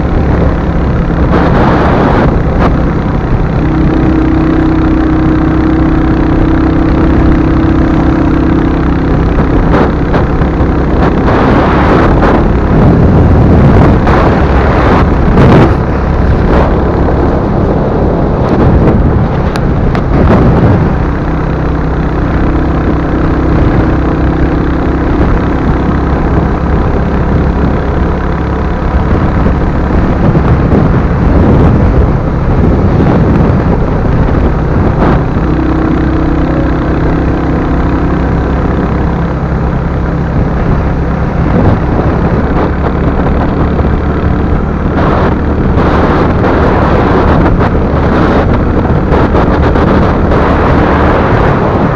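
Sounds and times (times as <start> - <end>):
motorcycle engine running: 0.0 - 51.9
wind and road noise: 0.0 - 51.9.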